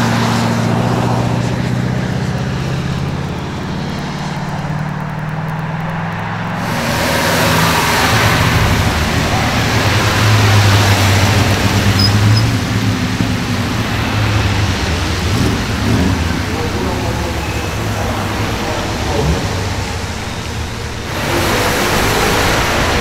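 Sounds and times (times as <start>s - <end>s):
sports car engine passing: 0.0s - 23.0s
tyre spray hiss: 6.5s - 23.0s.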